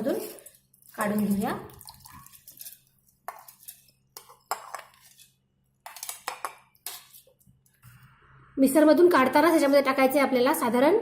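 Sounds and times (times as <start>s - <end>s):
utensils clinking and scraping: 0.0s - 7.5s.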